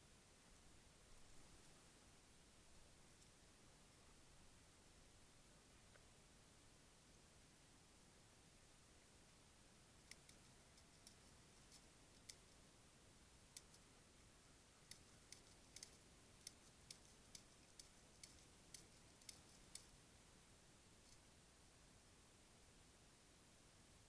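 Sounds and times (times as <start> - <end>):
faint sharp clicks: 10.0 - 12.6, 13.5 - 13.9, 14.8 - 20.0.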